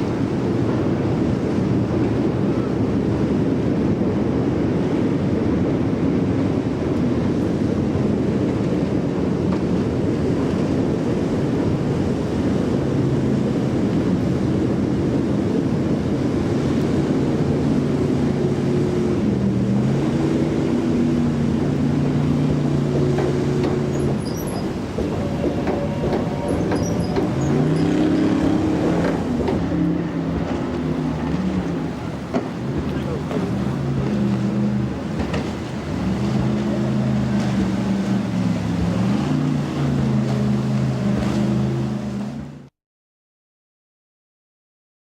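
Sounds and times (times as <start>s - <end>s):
wind buffeting microphone: 0.0s - 42.6s
engine rumble: 0.0s - 42.7s
droning engine note: 17.7s - 42.5s.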